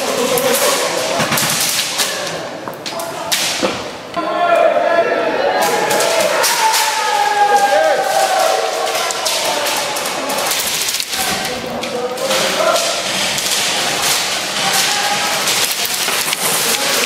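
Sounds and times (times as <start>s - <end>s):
distant voices: 0.0s - 17.0s
pellets striking walls: 5.7s - 17.0s.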